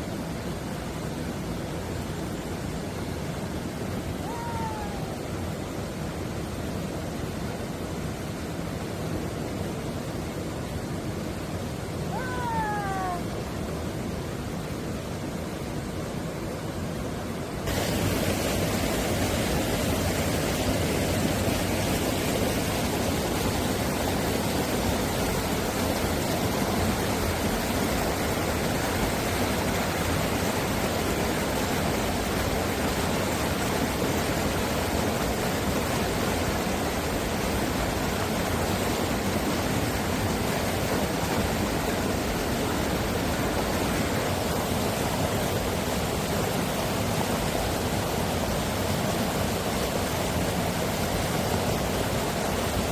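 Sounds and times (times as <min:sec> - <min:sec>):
stream rushing over rocks: 0:00.0 - 0:52.9.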